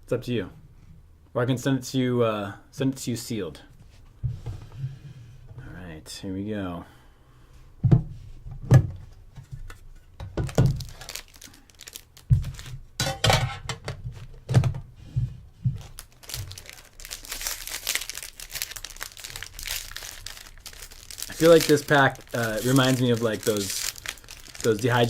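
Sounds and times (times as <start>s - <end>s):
dull thunks of packaging: 10.2s - 11.2s, 12.2s - 12.8s
foil wrapper crinkling and tearing: 10.4s - 12.8s, 15.8s - 25.0s.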